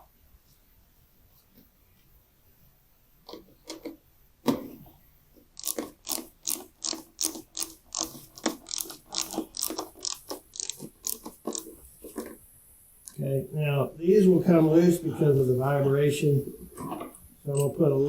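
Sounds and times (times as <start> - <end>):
ratchet wrench clicking: 5.6 - 11.8.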